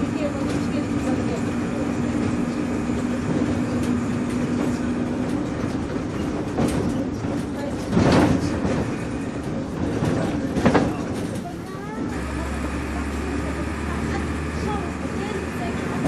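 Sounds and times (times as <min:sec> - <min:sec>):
bus body rattling: 0:00.0 - 0:16.0
bus engine and road rumble: 0:00.0 - 0:16.0
loud clatter from a bump: 0:00.2 - 0:12.2.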